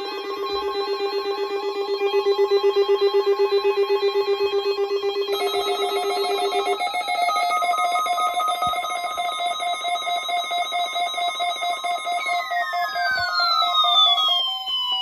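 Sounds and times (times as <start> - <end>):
pulsing electronic alert tones: 5.3 - 15.0.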